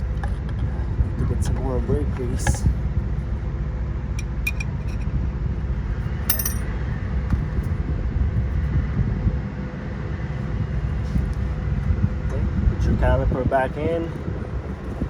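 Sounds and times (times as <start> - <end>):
low outdoor rumble: 0.0 - 15.0
light metallic clink: 4.2 - 5.0, 6.3 - 6.7.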